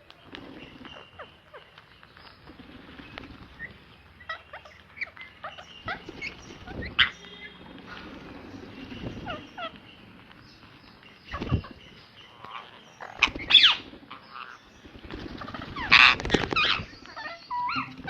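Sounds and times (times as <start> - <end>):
parrot squawking: 4.3 - 8.0, 15.4 - 18.0.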